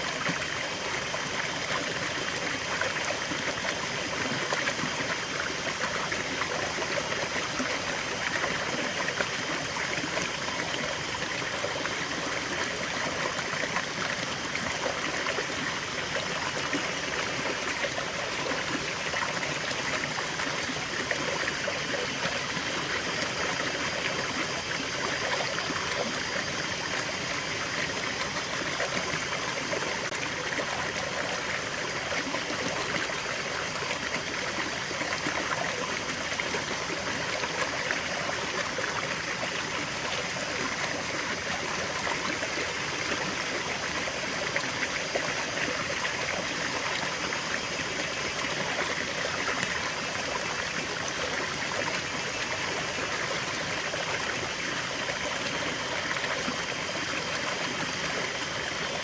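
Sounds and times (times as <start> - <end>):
stream trickling over stones: 0.0 - 59.0.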